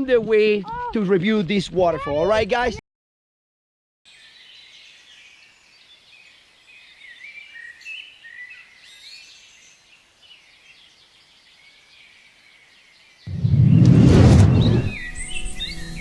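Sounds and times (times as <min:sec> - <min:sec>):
birds singing: 0:04.1 - 0:13.3, 0:14.6 - 0:16.0.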